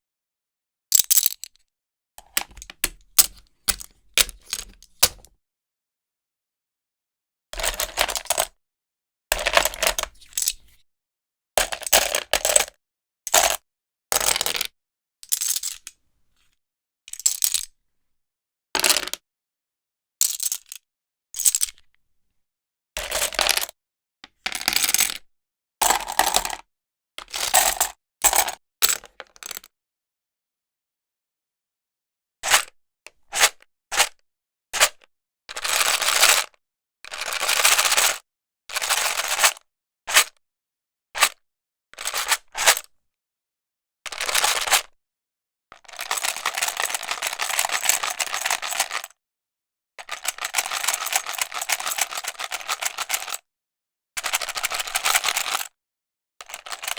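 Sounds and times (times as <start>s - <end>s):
tiles clacking together: 2.2s - 5.3s
tiles rattling in plastic case: 2.2s - 5.3s.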